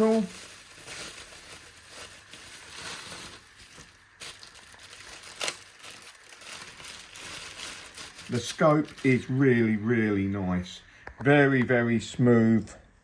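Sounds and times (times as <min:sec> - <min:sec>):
packaging rustling and crinkling: 0:00.0 - 0:10.4.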